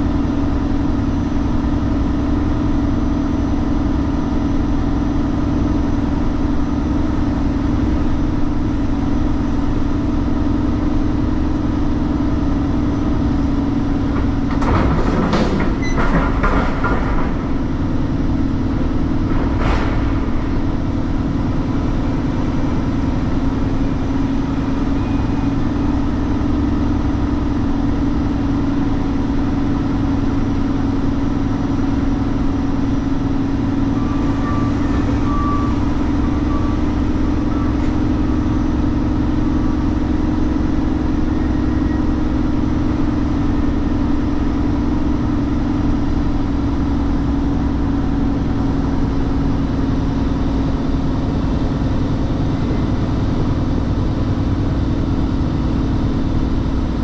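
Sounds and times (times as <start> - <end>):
diesel truck engine running: 0.0 - 57.0
rattling and clanking: 13.9 - 22.4.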